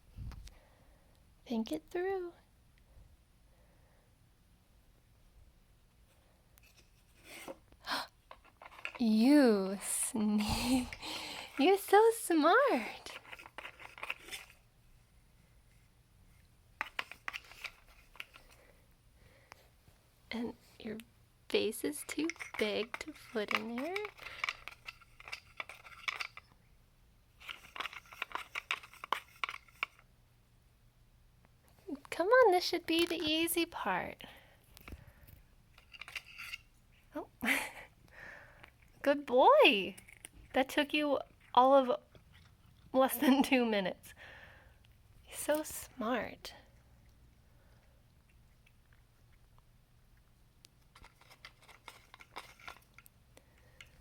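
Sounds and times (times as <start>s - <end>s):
dog chewing and crunching food: 40.0s - 43.4s, 46.8s - 54.0s.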